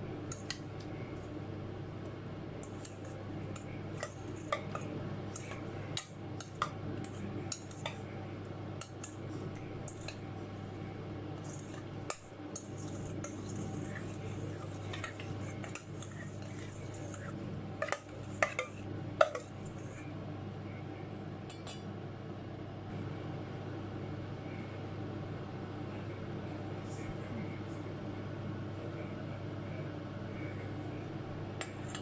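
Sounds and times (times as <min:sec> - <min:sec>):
steady low hum: 0:00.0 - 0:32.0
utensil clinking against bowl: 0:02.6 - 0:08.1, 0:08.8 - 0:09.2, 0:09.8 - 0:10.2, 0:11.4 - 0:19.7.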